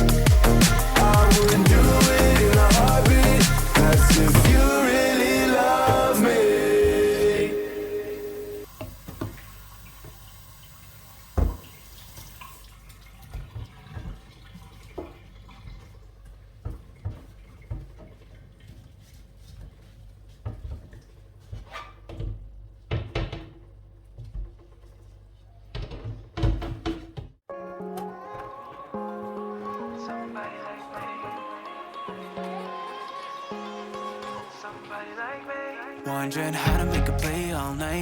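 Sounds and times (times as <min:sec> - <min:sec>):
tap water running into a sink: 0:08.6 - 0:18.4
knocks and clatters of plastic parts: 0:16.6 - 0:27.4.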